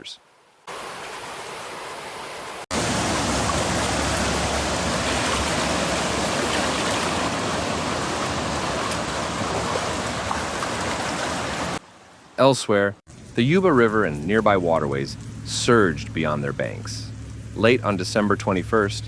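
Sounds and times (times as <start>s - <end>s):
floodwater rushing: 0.6s - 19.0s.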